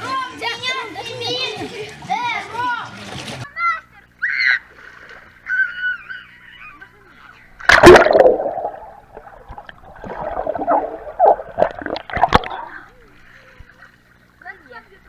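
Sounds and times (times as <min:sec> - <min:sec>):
water splashing and sloshing: 0:00.0 - 0:03.5, 0:04.6 - 0:05.8, 0:07.6 - 0:14.4
person jumping into water: 0:07.7 - 0:12.9.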